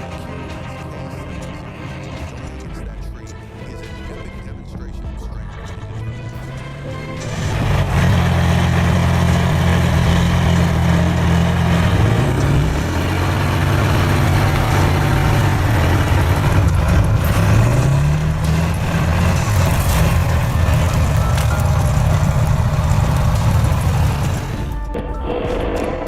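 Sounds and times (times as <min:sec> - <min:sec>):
large engine running: 0:00.0 - 0:25.0.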